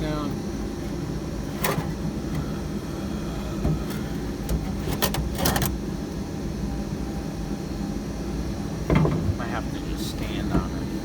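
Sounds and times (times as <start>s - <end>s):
low hum: 0.4s - 11.0s
metal and wood knocks: 8.9s - 9.4s.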